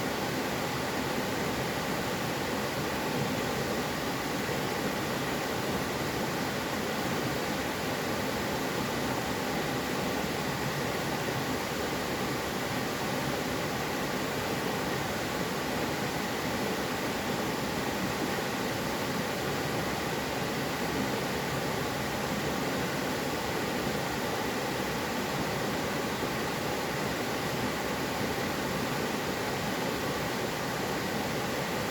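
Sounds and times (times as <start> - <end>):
stream water rushing: 0.0 - 31.9.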